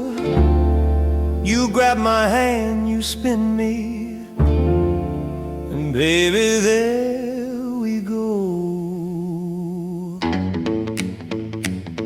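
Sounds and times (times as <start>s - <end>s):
rockabilly band music: 0.0s - 6.6s, 10.2s - 12.0s
person singing with vibrato: 0.0s - 10.2s.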